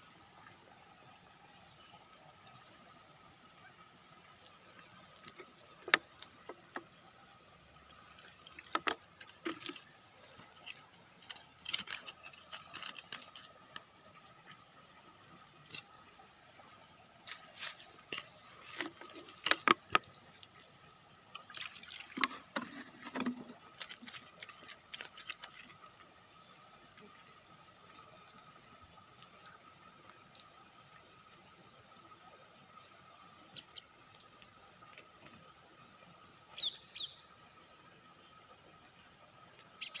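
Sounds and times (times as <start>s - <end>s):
insects buzzing: 0.0s - 40.0s
short clicks and rustles: 8.1s - 13.8s, 21.4s - 25.8s
bird chirps: 36.4s - 37.2s, 39.8s - 40.0s.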